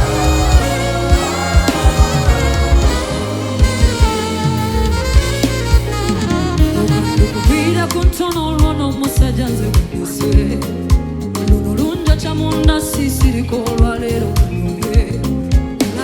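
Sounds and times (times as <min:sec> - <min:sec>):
melodic lead line: 0:00.0 - 0:15.2
bass: 0:00.0 - 0:16.0
keyboard chords: 0:00.0 - 0:16.0
steady drum beat: 0:00.0 - 0:16.0.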